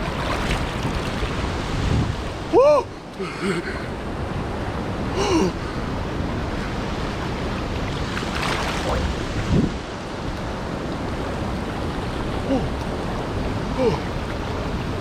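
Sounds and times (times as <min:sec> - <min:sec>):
water splashing: 0:00.0 - 0:02.6, 0:07.6 - 0:09.9
wind on microphone: 0:00.0 - 0:03.0, 0:06.4 - 0:12.0
creek water rushing: 0:00.0 - 0:15.0.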